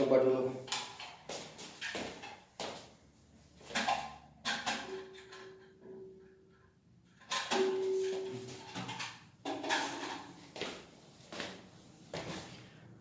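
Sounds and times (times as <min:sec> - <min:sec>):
plastic flush parts clattering: 0:03.6 - 0:05.8, 0:07.1 - 0:10.4.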